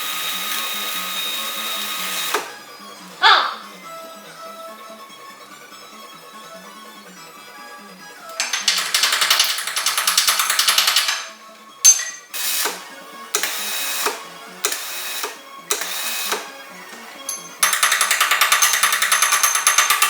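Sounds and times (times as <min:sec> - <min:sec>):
background music: 0:00.0 - 0:20.0
power tool rattling: 0:08.4 - 0:12.8, 0:17.0 - 0:20.0.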